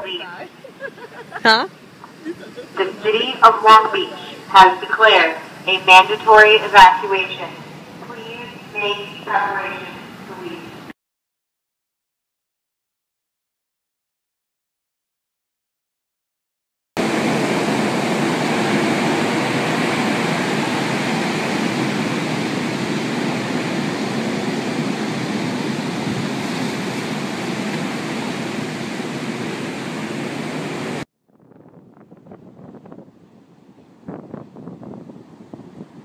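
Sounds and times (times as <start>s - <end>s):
rush of wind and surf: 17.0s - 36.0s.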